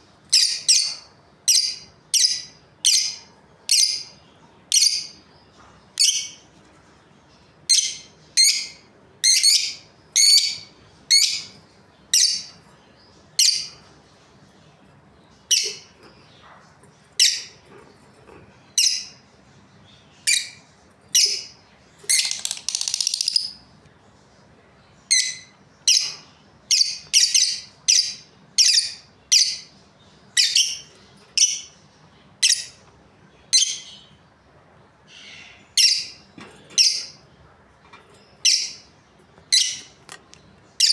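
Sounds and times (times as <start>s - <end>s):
budgerigars chirping: 7.7s - 11.5s, 15.5s - 16.6s, 17.2s - 17.7s, 30.3s - 31.7s, 35.1s - 36.2s, 38.4s - 38.9s, 39.5s - 40.0s.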